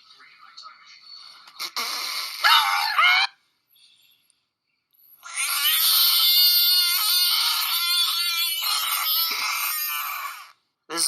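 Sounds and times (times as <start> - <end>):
animal wailing call: 2.4 - 3.4, 5.2 - 10.6.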